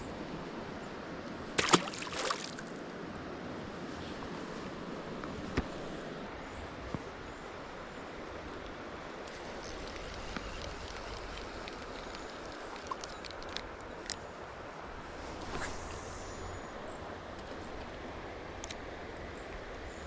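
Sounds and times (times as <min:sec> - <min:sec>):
river water rushing: 0:01.5 - 0:02.9.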